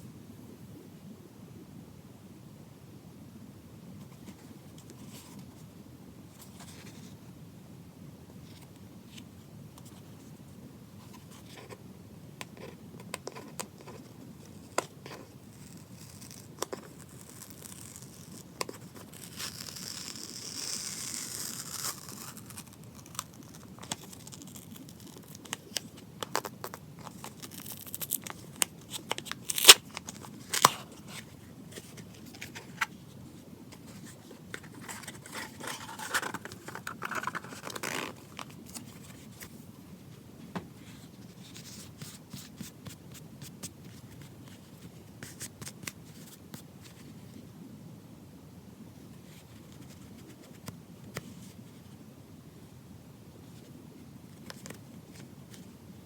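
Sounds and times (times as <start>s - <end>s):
packaging rustling or tearing: 15.6s - 33.0s, 33.9s - 39.3s.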